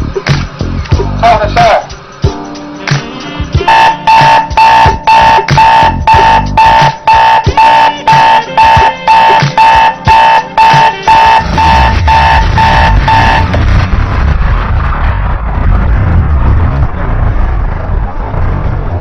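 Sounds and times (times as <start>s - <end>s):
electronic alarm beeping: 3.6s - 13.6s
low engine rumble: 11.4s - 19.0s.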